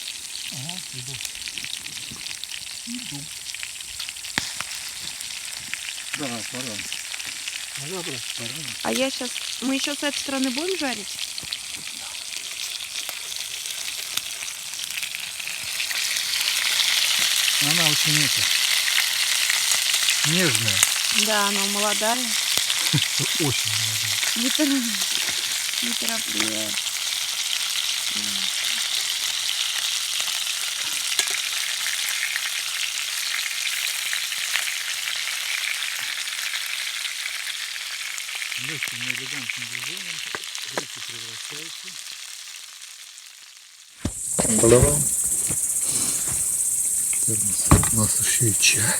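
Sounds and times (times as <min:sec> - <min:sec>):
sharp pops and crackles: 0:00.0 - 0:27.5, 0:38.3 - 0:41.2, 0:44.0 - 0:48.7
fish sizzling over a campfire: 0:00.0 - 0:48.9.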